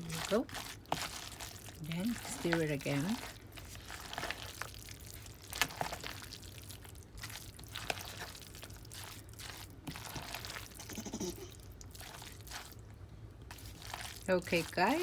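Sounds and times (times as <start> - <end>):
spoon squelching in salad: 0.0 - 15.0.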